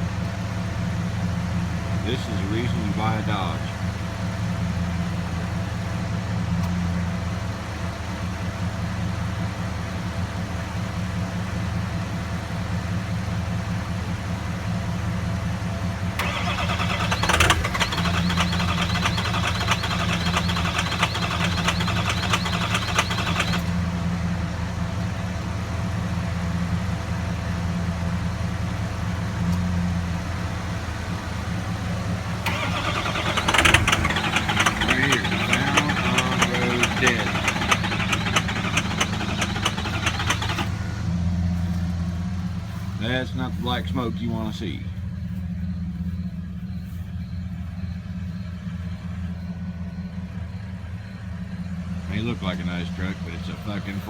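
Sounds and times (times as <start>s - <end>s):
diesel engine running rough: 0.0s - 54.0s
higher rattling sound: 32.5s - 40.8s.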